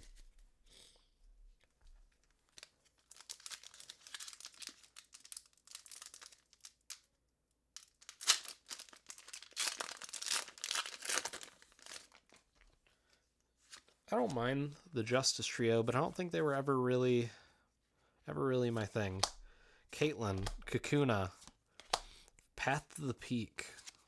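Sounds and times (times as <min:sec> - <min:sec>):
foil wrapper tearing and crinkling: 0:02.6 - 0:07.0, 0:07.8 - 0:12.4.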